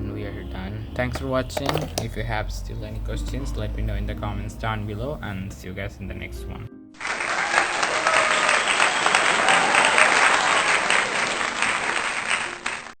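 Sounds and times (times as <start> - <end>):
crowd applauding: 7.0 - 13.0.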